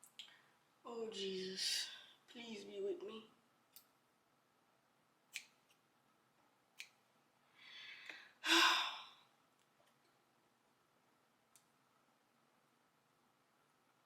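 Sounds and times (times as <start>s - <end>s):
person sighing heavily: 7.6s - 9.3s.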